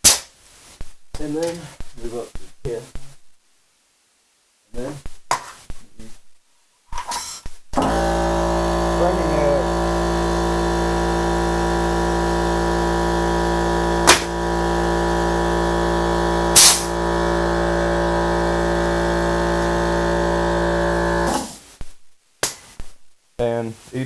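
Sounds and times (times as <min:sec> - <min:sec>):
nail gun shots: 0:00.0 - 0:00.3, 0:14.1 - 0:14.4, 0:16.6 - 0:16.9
steady mechanical hum: 0:07.8 - 0:21.6.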